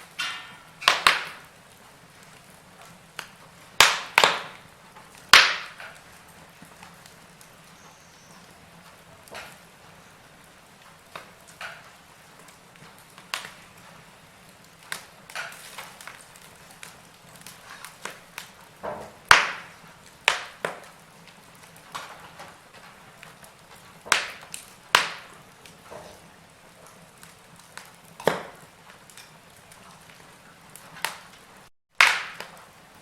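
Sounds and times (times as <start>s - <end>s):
faint steady hiss: 0.0s - 33.0s
wood fire crackling: 0.0s - 33.0s.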